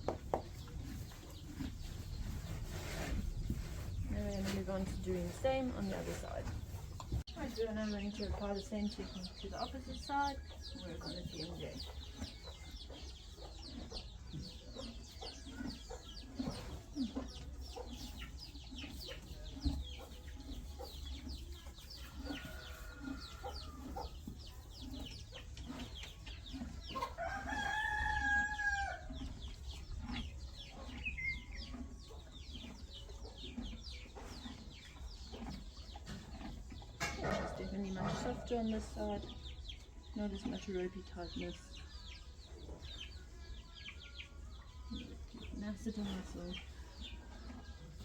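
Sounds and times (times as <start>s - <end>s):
chickens clucking: 0.0s - 48.0s
small birds chirping: 0.0s - 48.0s.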